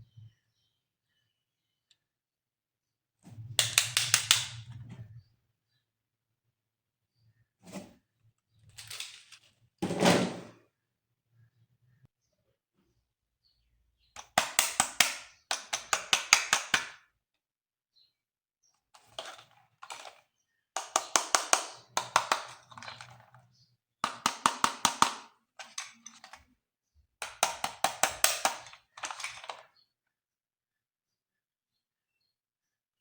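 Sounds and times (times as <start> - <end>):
plastic toy clicking rapidly: 3.6 - 4.6, 14.2 - 17.0, 19.0 - 20.2, 20.8 - 23.3, 24.0 - 26.5, 27.2 - 29.7.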